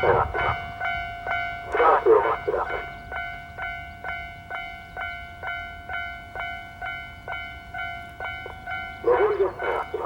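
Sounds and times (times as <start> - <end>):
recorded voice announcement: 0.0 - 0.6, 1.7 - 3.0, 9.0 - 10.0
level crossing warning bell: 0.0 - 10.0.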